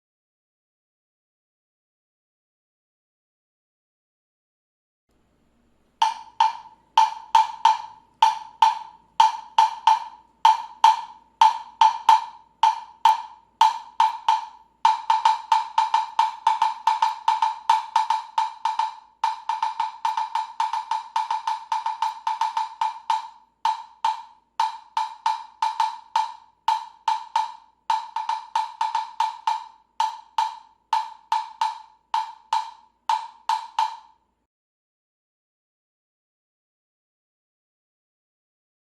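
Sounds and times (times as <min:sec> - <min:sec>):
wood block knocks: 0:06.0 - 0:34.2.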